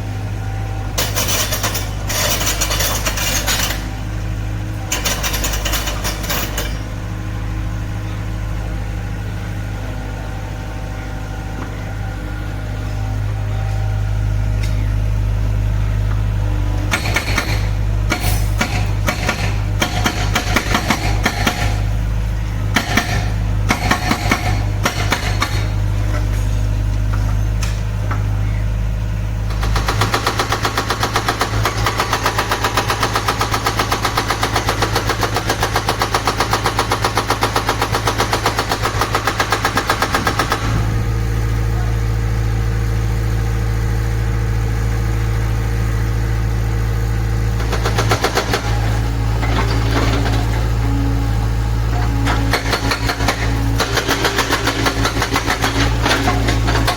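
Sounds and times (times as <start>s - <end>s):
diesel engine running: 0.0s - 56.9s
hydraulic breaker hammering: 16.9s - 21.9s, 22.7s - 25.8s, 29.5s - 41.1s, 51.9s - 56.9s.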